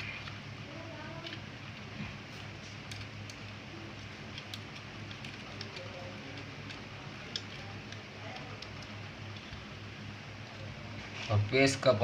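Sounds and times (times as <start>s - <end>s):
low steady hum: 0.0s - 12.0s
screwdriver clicks and ticks: 2.8s - 9.5s.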